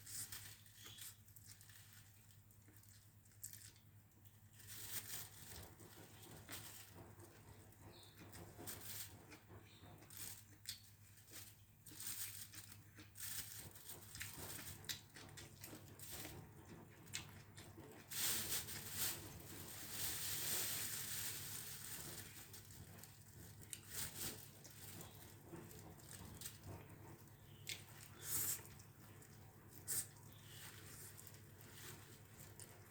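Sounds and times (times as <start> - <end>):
chewing noodles: 9.0 - 18.1
plastic bag crinkling: 17.8 - 26.8.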